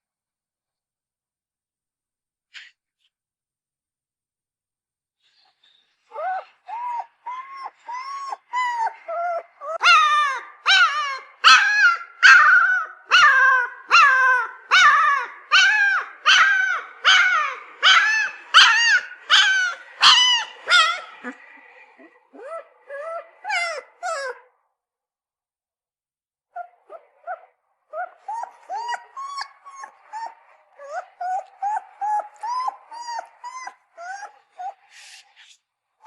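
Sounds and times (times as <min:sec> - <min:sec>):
puppy whimpering: 0:06.1 - 0:24.5, 0:26.5 - 0:34.9.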